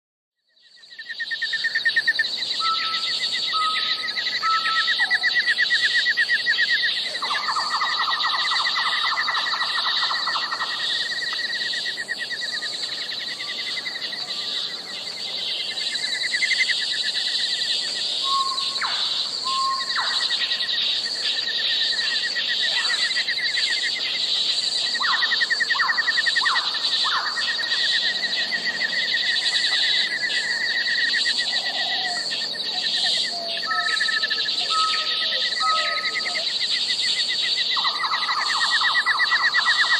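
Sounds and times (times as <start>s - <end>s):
insects lower pulsing buzz: 0.5s - 39.9s
insects high pulsing buzz: 0.6s - 39.9s
bird chirps and calls: 2.6s - 11.6s, 18.2s - 21.3s.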